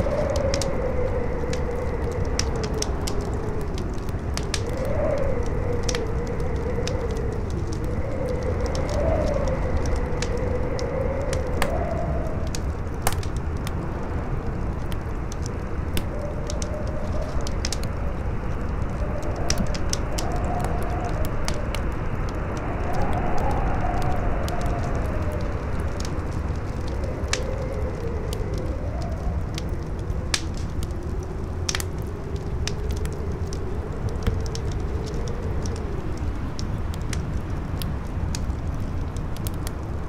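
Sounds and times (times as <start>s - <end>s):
campfire crackling and popping: 0.0s - 40.0s
wind howling: 0.0s - 40.0s.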